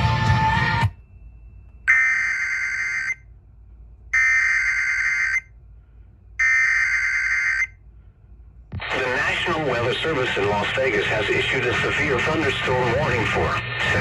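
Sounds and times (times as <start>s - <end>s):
harsh buzzing digital warble: 1.9s - 3.2s.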